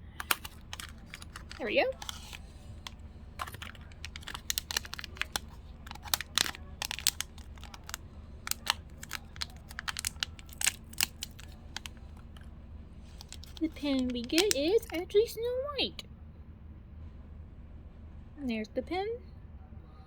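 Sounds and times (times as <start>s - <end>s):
packaging crinkling and tearing: 0.0s - 15.1s
small sharp clicks: 13.2s - 15.0s.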